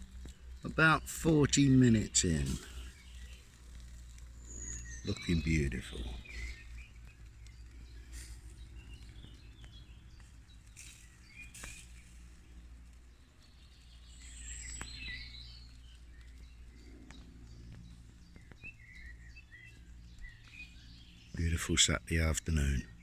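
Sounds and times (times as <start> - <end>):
low background rumble: 0.0 - 23.0
small birds chirping: 0.0 - 23.0
faint sharp clicks: 5.9 - 13.1, 14.2 - 20.7.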